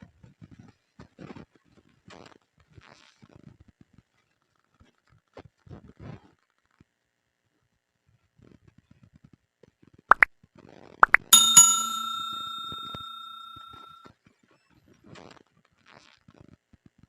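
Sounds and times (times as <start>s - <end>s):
bell-like ding: 11.0s - 14.0s.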